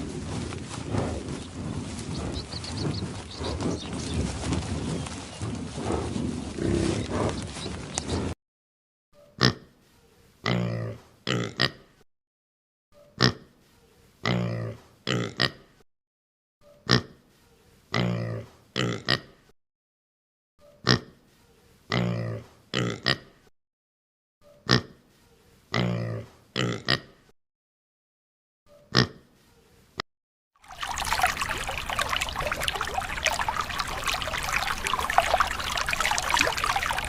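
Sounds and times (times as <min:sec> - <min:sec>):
pig grunting and oinking: 0:05.9 - 0:07.4, 0:09.4 - 0:09.7, 0:10.4 - 0:11.9, 0:13.2 - 0:13.5, 0:14.2 - 0:15.7, 0:16.8 - 0:17.2, 0:17.9 - 0:19.4, 0:20.8 - 0:21.2, 0:21.9 - 0:23.4, 0:24.6 - 0:25.0, 0:25.7 - 0:27.2, 0:28.9 - 0:29.2.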